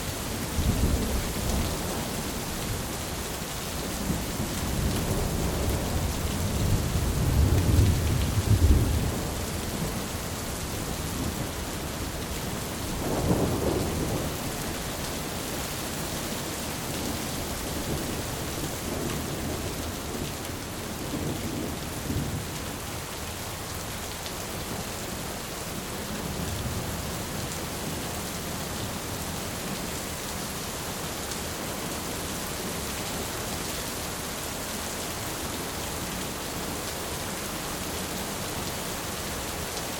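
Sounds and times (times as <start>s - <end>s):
heavy rain pouring: 0.0s - 39.9s
rolling thunder: 4.1s - 10.0s.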